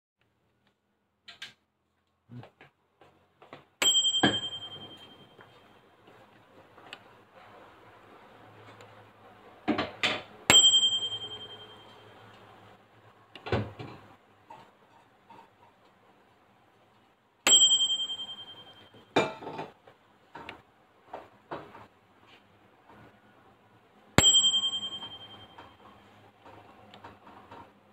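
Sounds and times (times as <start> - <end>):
microwave bell ding: 3.8 - 5.6, 10.5 - 12.3, 17.5 - 19.2, 24.2 - 26.0.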